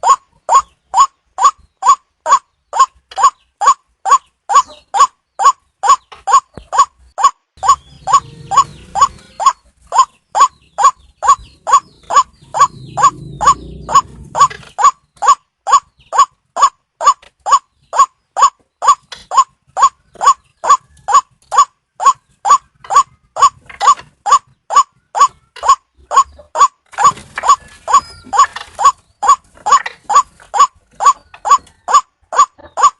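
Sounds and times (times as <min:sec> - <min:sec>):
waterhen call: 0:00.0 - 0:32.9
low rumbling noise: 0:10.6 - 0:14.8.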